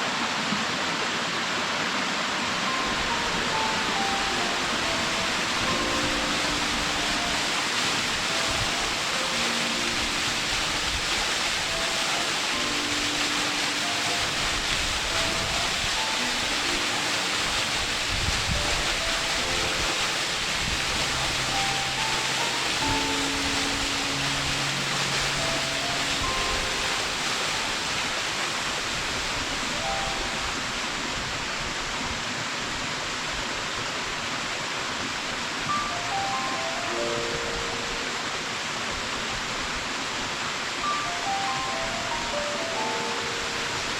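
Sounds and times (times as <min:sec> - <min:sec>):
waterfall pouring: 0:00.0 - 0:33.0.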